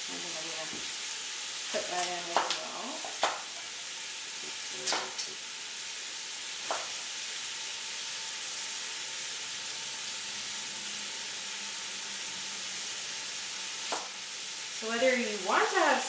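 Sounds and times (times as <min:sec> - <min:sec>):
meat sizzling in a pot: 0:00.0 - 0:16.0.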